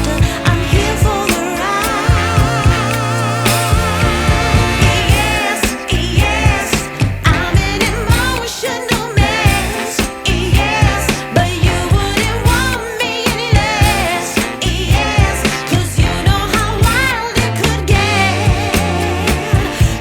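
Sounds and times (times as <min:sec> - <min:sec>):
song with sung vocals and beat: 0:00.0 - 0:20.0.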